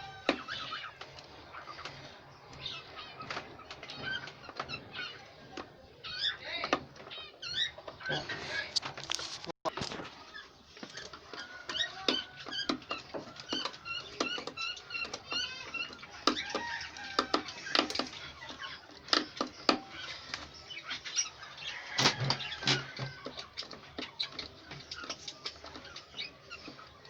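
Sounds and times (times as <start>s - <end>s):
small birds chirping: 0.0s - 27.0s
knocks and clicks of wood: 10.8s - 18.2s.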